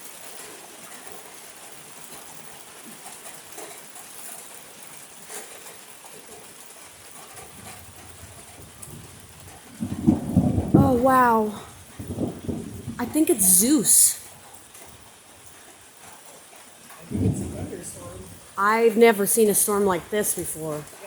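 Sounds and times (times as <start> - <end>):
steady rain hiss: 0.0 - 21.0
low rumble of thunder: 7.3 - 13.0, 16.9 - 18.6.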